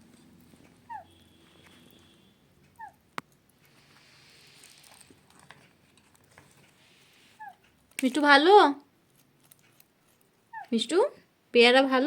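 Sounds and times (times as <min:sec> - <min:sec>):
parrot chirping: 0:00.8 - 0:02.1, 0:02.7 - 0:03.0, 0:07.4 - 0:07.6, 0:10.4 - 0:10.8.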